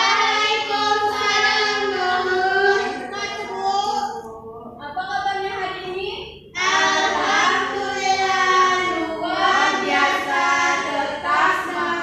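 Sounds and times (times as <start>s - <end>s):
children singing together: 0.0s - 4.9s, 6.5s - 12.0s.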